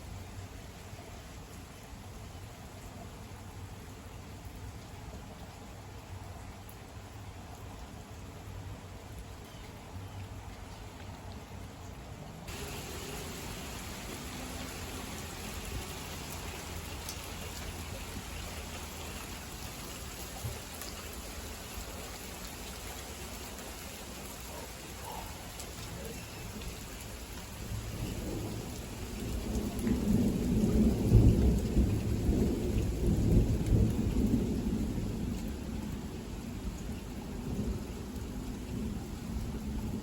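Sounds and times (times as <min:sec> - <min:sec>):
heavy rain falling: 0:00.0 - 0:40.0
thunder rumbling: 0:12.5 - 0:20.6, 0:27.6 - 0:36.7.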